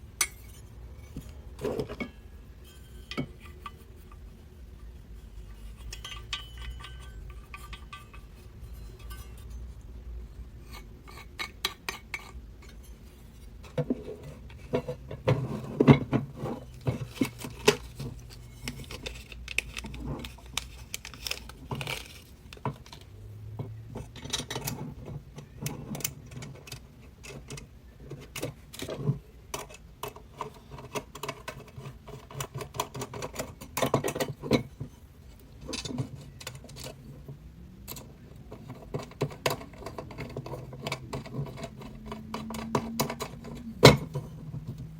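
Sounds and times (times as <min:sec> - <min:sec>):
hard plastic parts clicking and clinking: 0:13.6 - 0:34.7.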